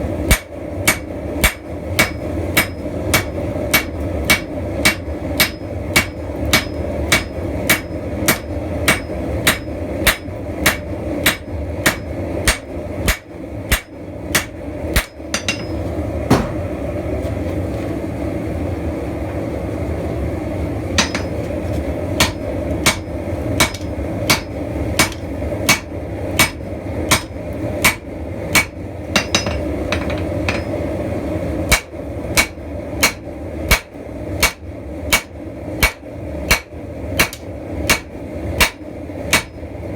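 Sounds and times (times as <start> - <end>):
hammer striking steel on anvil: 0.3 - 16.6, 21.0 - 21.4, 22.2 - 30.8, 31.7 - 39.6
steady low rush: 4.5 - 27.0.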